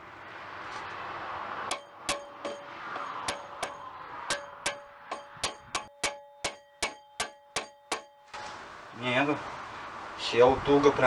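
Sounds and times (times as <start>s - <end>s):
hammer tapping on metal: 1.7s - 8.4s.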